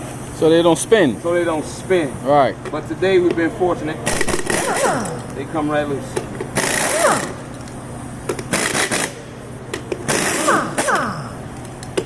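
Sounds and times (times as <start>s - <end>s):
impact wrench spinning: 4.0s - 5.3s, 6.4s - 7.7s, 8.3s - 12.0s.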